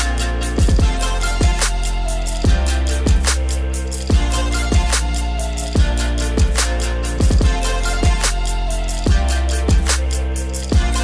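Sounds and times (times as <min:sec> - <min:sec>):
sustained bass line: 0:00.0 - 0:11.0
deep kick drums: 0:00.6 - 0:01.6, 0:02.4 - 0:03.3, 0:04.1 - 0:05.0, 0:05.8 - 0:06.6, 0:07.2 - 0:08.2, 0:09.1 - 0:09.9, 0:10.7 - 0:11.0
sharp snare hits: 0:03.2 - 0:03.6.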